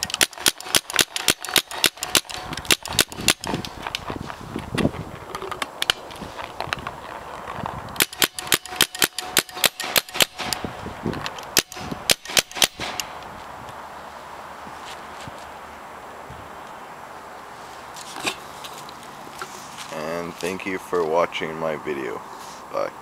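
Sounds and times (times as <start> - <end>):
paintball gun firing: 0.0 - 3.7, 8.0 - 10.7, 11.5 - 13.2.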